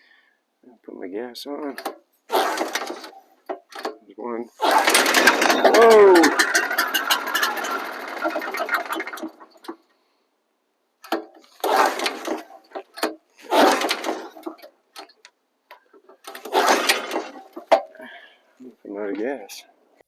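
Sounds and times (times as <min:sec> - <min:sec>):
recoil rope pull cranking engine: 0:02.3 - 0:03.2, 0:04.6 - 0:09.8, 0:11.1 - 0:15.1, 0:16.2 - 0:18.0
small gas engine sputtering: 0:02.3 - 0:03.2, 0:04.5 - 0:09.9, 0:11.1 - 0:14.7, 0:16.2 - 0:18.2.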